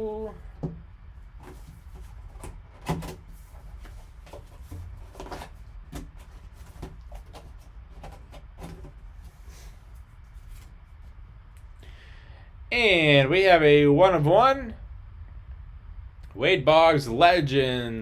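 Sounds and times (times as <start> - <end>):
cardboard box handled: 1.4 - 10.8.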